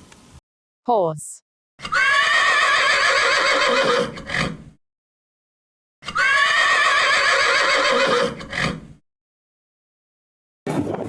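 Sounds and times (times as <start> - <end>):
horse whinnying: 1.8 - 4.7, 6.0 - 9.0.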